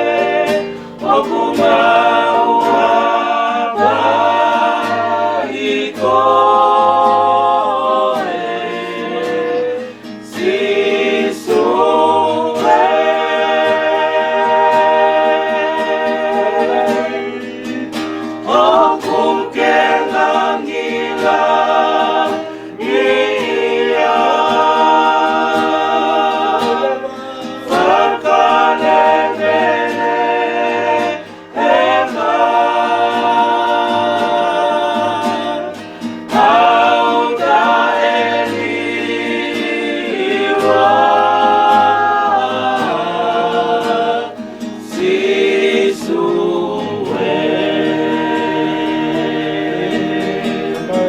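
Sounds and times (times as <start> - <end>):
choir singing a hymn: 0.0 - 51.0
breath between phrases: 22.5 - 22.8.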